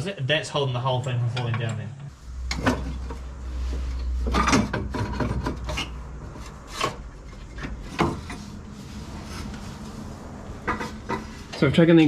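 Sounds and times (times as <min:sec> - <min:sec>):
hand tools scraping metal: 0:04.0 - 0:09.6, 0:10.5 - 0:11.7
tools clanking on metal: 0:04.2 - 0:08.4.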